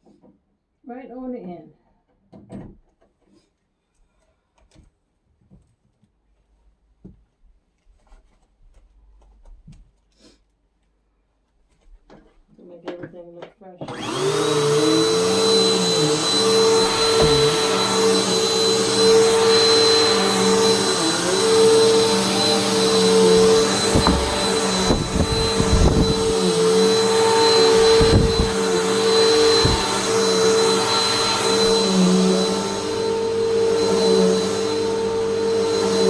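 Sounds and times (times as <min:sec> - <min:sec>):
vacuum cleaner whining: 0:13.8 - 0:36.0
low knocks: 0:23.8 - 0:26.4.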